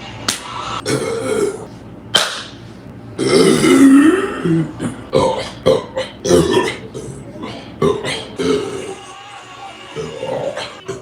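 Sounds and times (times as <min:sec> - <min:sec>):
woman belching: 0:03.2 - 0:07.1.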